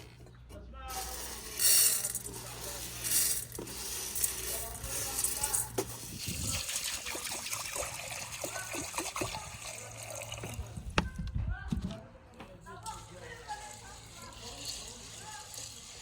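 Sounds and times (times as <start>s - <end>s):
water running: 6.2s - 10.7s.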